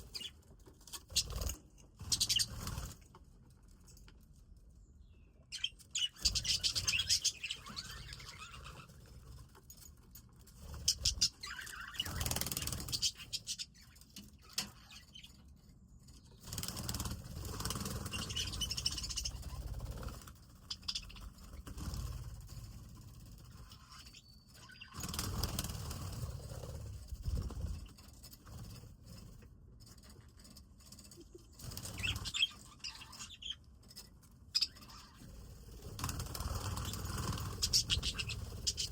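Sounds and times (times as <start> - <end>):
small birds chirping: 0.0 - 38.9.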